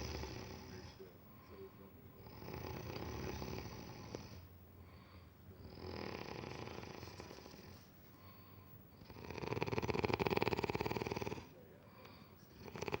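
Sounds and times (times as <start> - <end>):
person snoring: 0.0 - 0.9, 2.2 - 4.4, 5.6 - 7.6, 9.0 - 11.5, 12.6 - 13.0.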